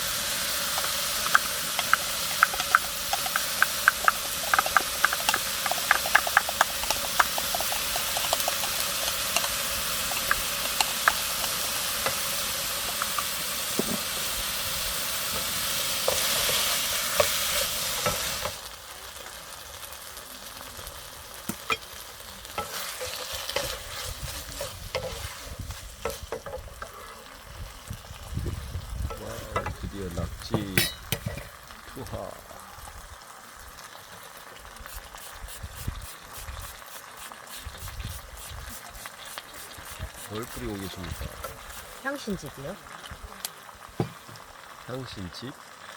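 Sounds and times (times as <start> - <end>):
food sizzling in a frying pan: 0.0 - 45.9
utensil scraping a pan: 0.7 - 14.2, 22.6 - 27.3, 30.8 - 31.6.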